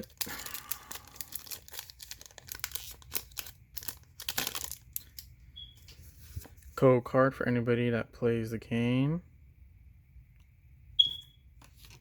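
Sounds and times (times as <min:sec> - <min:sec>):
foil pack crinkling: 0:00.0 - 0:05.3.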